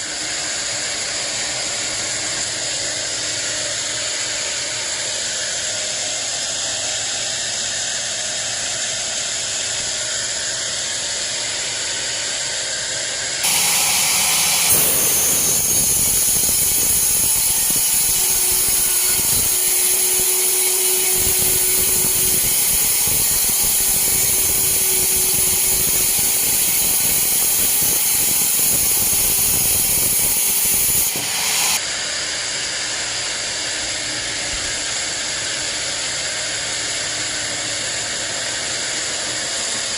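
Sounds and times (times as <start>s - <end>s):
band saw running: 0.0s - 31.9s.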